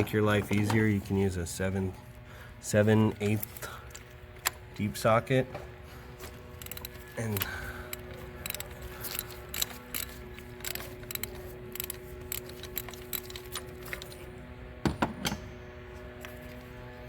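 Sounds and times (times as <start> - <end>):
ratchet clicking on metal: 6.5 - 14.1.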